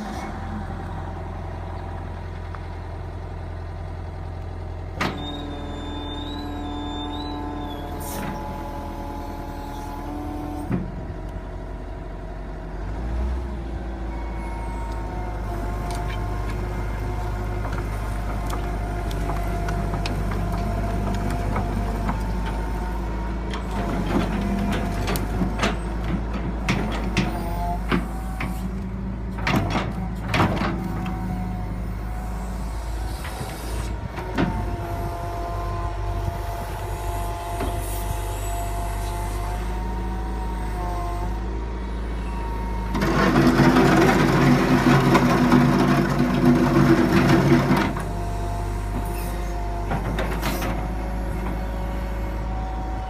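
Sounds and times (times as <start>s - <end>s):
excavator diesel engine running: 0.0s - 53.0s.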